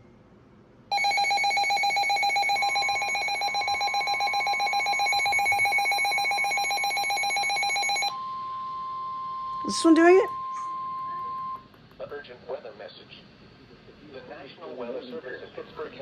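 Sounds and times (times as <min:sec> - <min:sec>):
weather radio alert alarm trilling: 0:00.9 - 0:08.1
steady warning alarm tone: 0:00.9 - 0:11.6.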